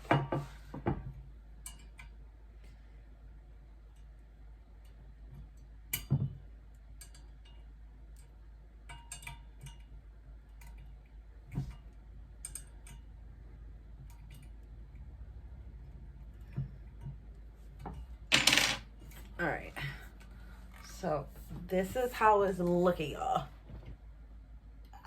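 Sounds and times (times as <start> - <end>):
metal pipe parts clicking: 1.6 - 2.1, 7.0 - 7.6, 8.9 - 9.9.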